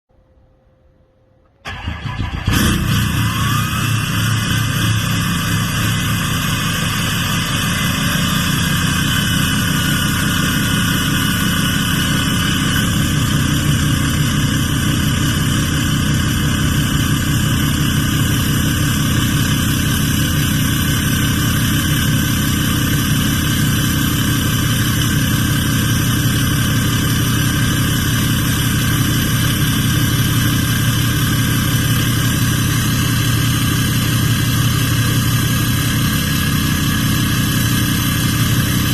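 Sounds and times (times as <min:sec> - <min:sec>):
diesel engine idling: 0:01.6 - 0:38.9
turbo whistle: 0:03.0 - 0:10.7.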